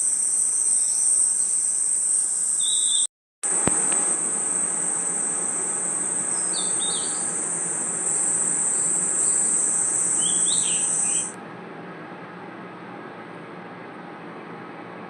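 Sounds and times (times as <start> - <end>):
background hiss: 0.0 - 11.3
crickets trilling: 0.0 - 11.4
bird chirps: 0.4 - 3.1, 4.7 - 11.3.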